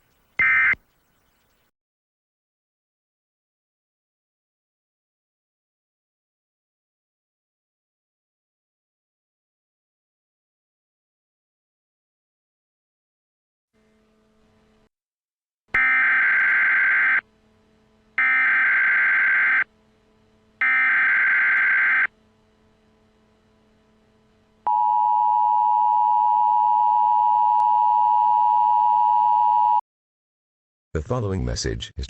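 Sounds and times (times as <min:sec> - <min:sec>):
buzzy data bursts: 0:18.2 - 0:19.7, 0:20.6 - 0:22.1.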